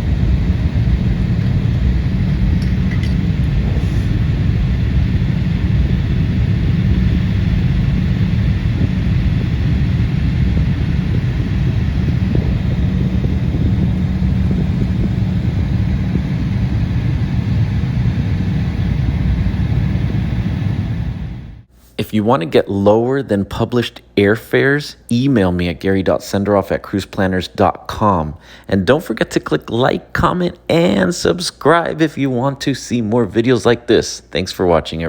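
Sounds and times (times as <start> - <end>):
jet cabin engine rumble: 0.0 - 21.7.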